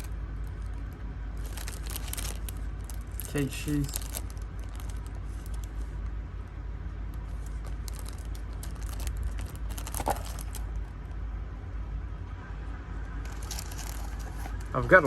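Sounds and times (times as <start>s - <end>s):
packaging clicks and rustles: 0.0s - 6.1s, 7.1s - 10.9s, 13.2s - 15.0s
steady low hum: 0.0s - 15.0s.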